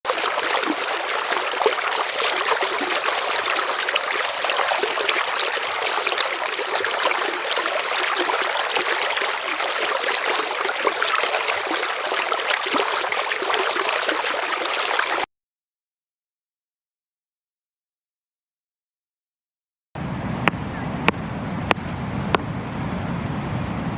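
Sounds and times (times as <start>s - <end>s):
river water rushing: 0.1s - 15.2s.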